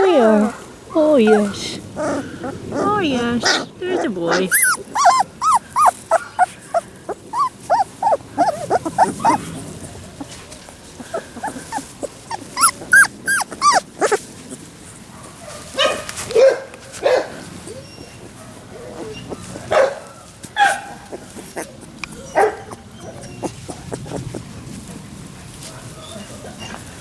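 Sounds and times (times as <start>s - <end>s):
puppies whimpering and yelping: 0.9s - 14.6s, 17.6s - 19.7s, 20.6s - 24.7s, 25.8s - 27.0s.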